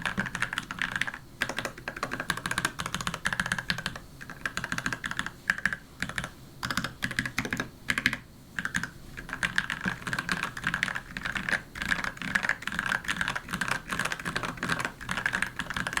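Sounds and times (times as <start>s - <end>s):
mechanical keyboard typing: 0.0s - 16.0s.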